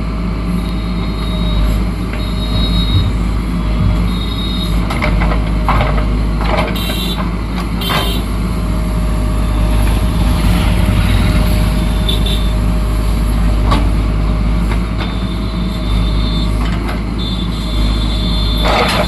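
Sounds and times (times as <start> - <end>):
diesel engine running under load: 0.0 - 19.0
machine scraping and squeaking: 9.2 - 14.0.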